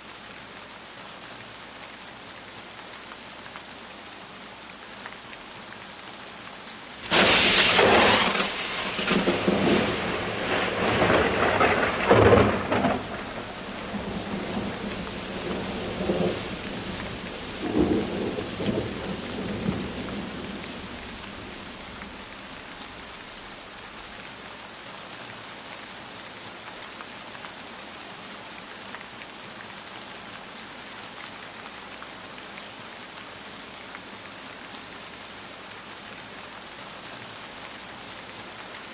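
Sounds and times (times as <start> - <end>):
steady rain: 0.0 - 38.9
thunderclap and rumbling: 7.0 - 22.8.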